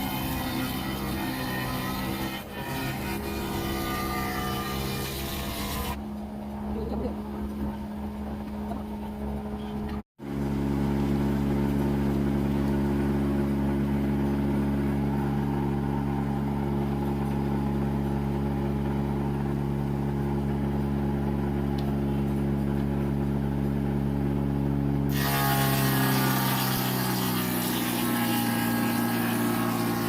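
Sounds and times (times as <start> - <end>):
planer machine motor humming: 9.5 - 30.0.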